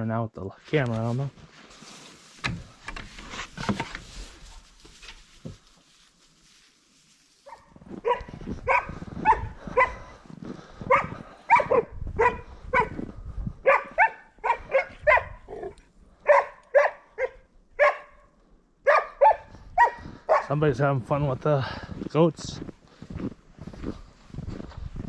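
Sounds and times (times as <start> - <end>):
dog barking: 7.4 - 10.1, 10.8 - 20.6.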